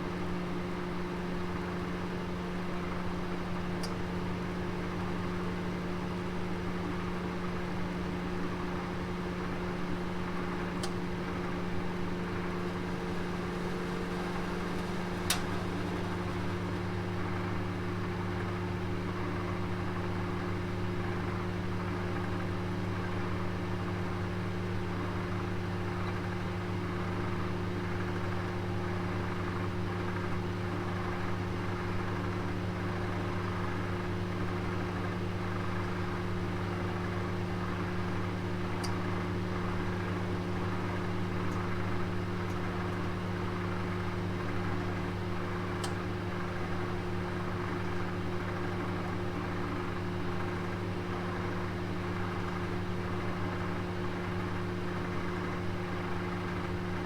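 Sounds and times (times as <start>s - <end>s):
oven electrical hum: 0.0s - 57.0s
lower hum: 10.9s - 17.9s.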